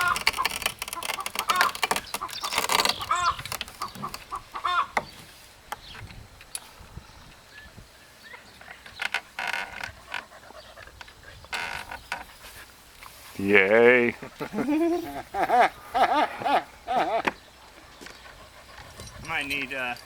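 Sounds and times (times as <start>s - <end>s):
chicken calling: 0.0s - 5.0s.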